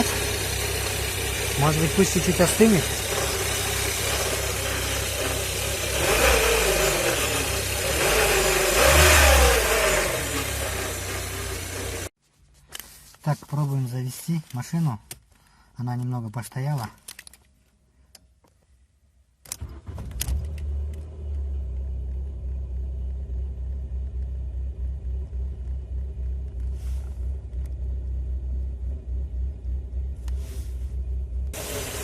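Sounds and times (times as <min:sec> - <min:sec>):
car engine cranking: 0:00.0 - 0:12.1, 0:19.5 - 0:22.1
car engine idling: 0:00.0 - 0:12.1, 0:19.6 - 0:32.0.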